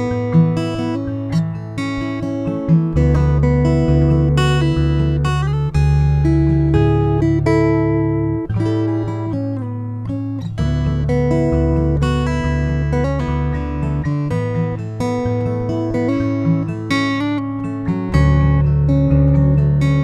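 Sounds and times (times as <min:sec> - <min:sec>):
acoustic guitar chords: 0:00.0 - 0:20.0.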